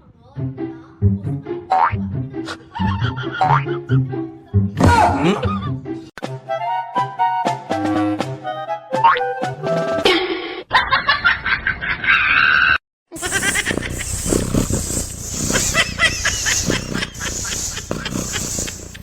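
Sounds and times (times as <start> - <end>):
animal cries and squeals: 13.2 - 19.0.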